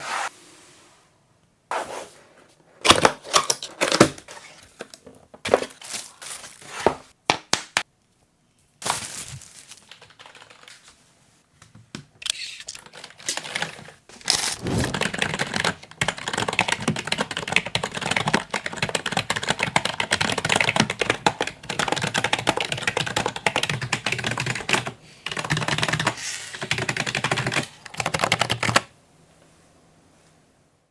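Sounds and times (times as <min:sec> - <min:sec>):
mechanical keyboard keys clacking: 0:09.9 - 0:10.7, 0:14.6 - 0:28.9.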